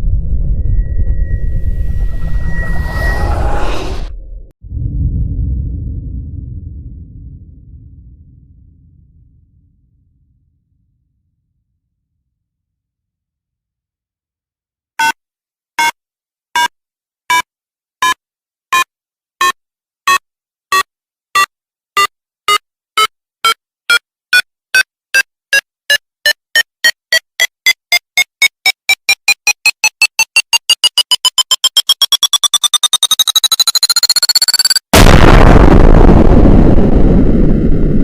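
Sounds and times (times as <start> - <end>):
electronic countdown beeps: 18.8 - 24.0, 24.8 - 34.9.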